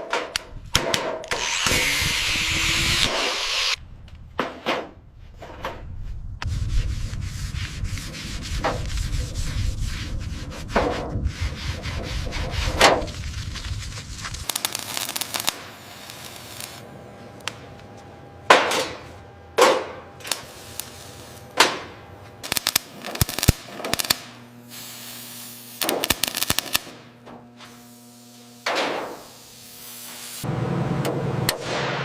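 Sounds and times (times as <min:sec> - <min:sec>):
sharp cracks and clicks: 0:22.4 - 0:24.4, 0:25.8 - 0:27.0.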